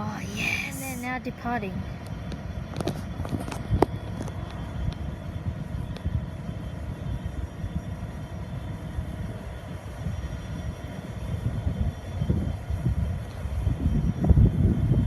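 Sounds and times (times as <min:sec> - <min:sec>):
faint whine tones: 0:00.0 - 0:15.0.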